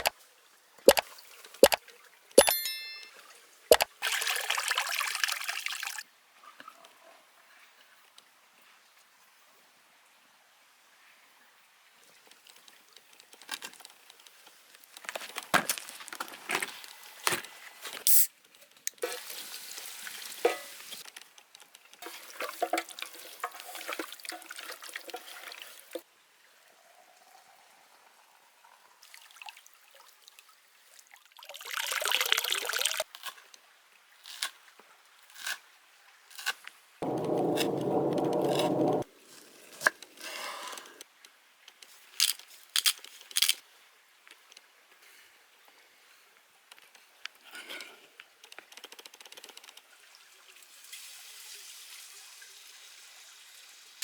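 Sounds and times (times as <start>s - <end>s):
steady dull tone: 37.0s - 39.0s.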